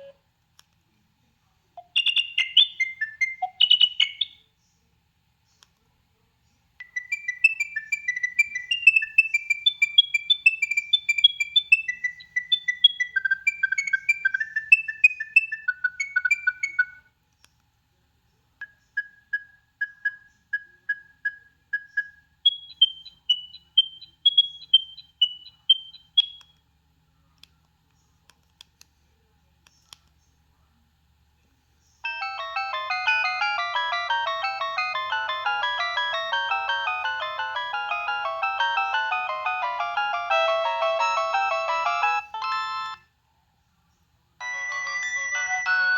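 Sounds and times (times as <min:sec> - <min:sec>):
phone ringtone beeping melody: 0:06.8 - 0:17.0, 0:32.1 - 0:43.0, 0:44.4 - 0:45.9
repeating single ringtone note: 0:32.1 - 0:43.0.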